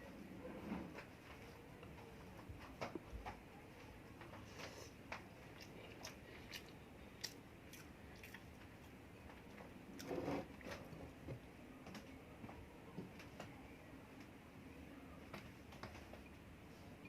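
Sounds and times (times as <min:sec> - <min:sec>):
person chewing: 0:05.4 - 0:09.0.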